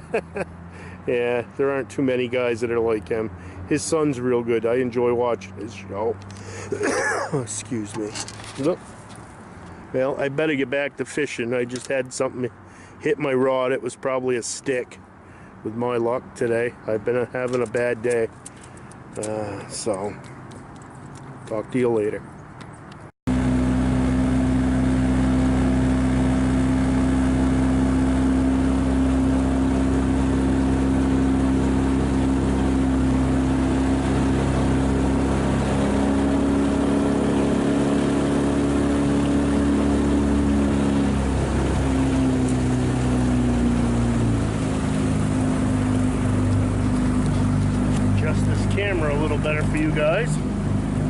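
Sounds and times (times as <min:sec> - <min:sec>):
outboard motor running: 0:00.0 - 0:10.6, 0:23.3 - 0:51.0.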